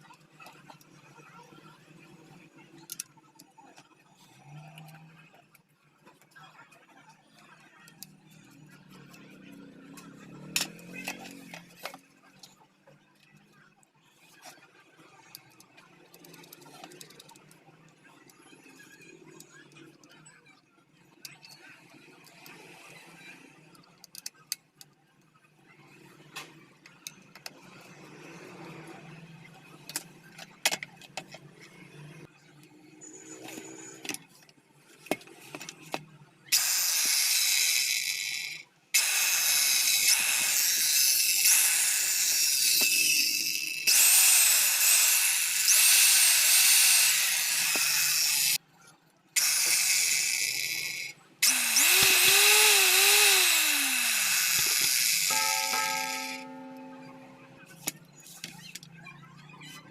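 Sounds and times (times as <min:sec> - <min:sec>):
electric cutter motor running: 0:36.6 - 0:48.6, 0:49.4 - 0:57.6.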